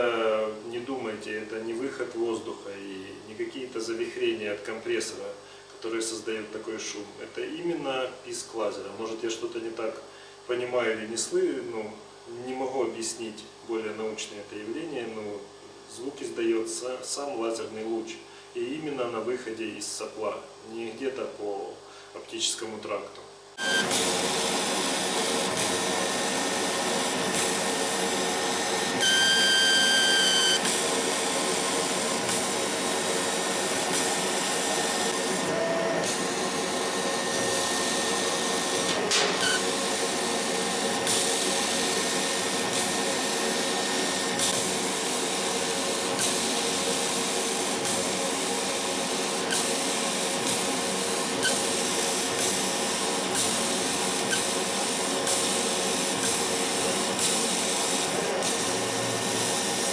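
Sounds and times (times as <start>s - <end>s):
laser cutter hiss and hum: 23.6s - 59.9s.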